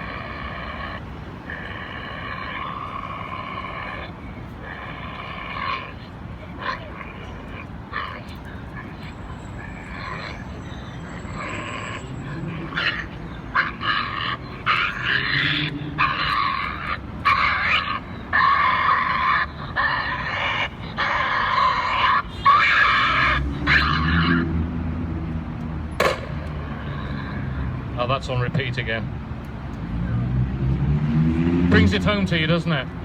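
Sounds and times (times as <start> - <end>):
badger squealing cries: 0.0 - 24.6.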